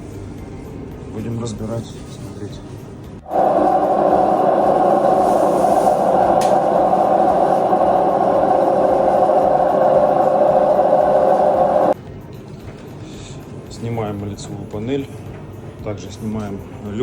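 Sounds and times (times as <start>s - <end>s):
washing machine spin roar: 3.2s - 12.0s.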